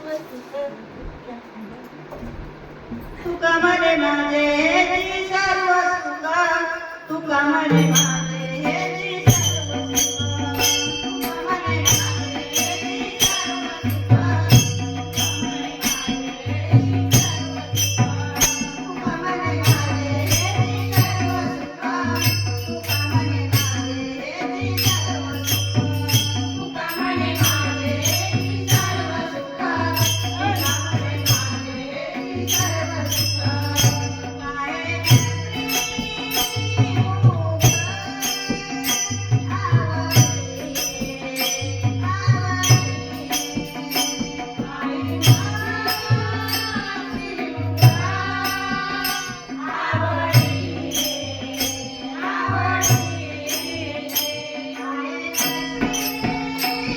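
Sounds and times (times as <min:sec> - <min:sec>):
jingling percussion: 0:04.4 - 0:56.9
drum beat: 0:07.7 - 0:54.7.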